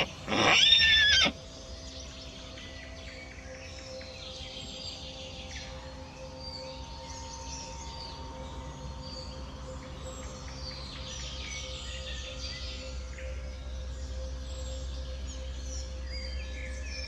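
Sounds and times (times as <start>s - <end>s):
small birds chirping: 0.0s - 1.4s.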